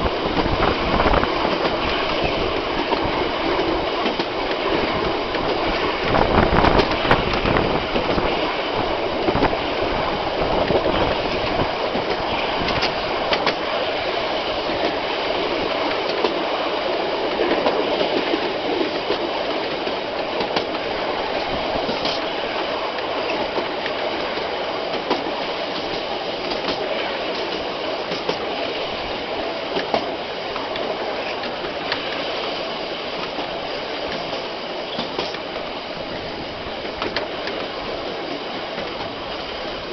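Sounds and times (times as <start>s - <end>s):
train wheels rumbling on rails: 0.0s - 39.9s
clicks over rail joints: 17.4s - 21.0s, 21.8s - 22.3s, 36.8s - 39.2s.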